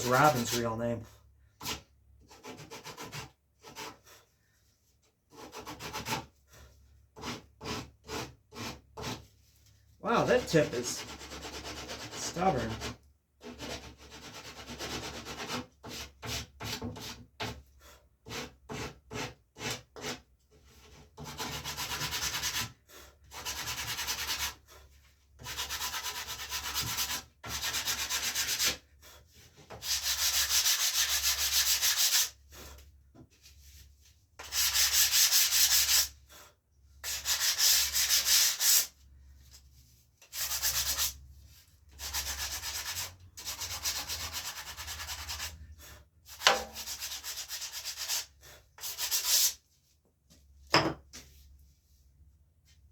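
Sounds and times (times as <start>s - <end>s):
sandpaper scraping on wood: 0.0s - 0.8s, 10.2s - 17.2s, 23.3s - 24.6s, 25.4s - 28.8s, 29.8s - 32.4s, 34.4s - 36.2s, 37.0s - 39.0s, 40.3s - 41.2s, 41.9s - 45.6s, 46.3s - 49.6s.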